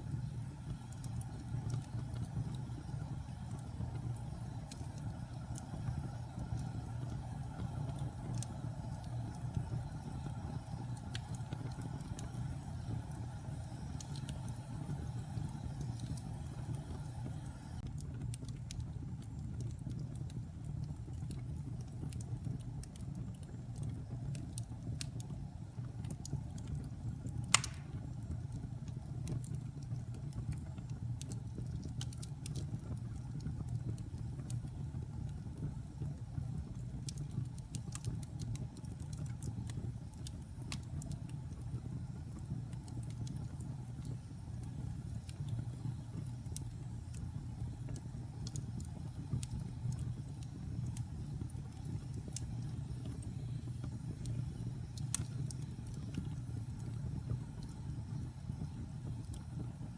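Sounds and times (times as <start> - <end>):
fire crackling: 0.0 - 59.9
fire rumbling: 0.0 - 59.9
loud pop from fire: 27.5 - 28.1.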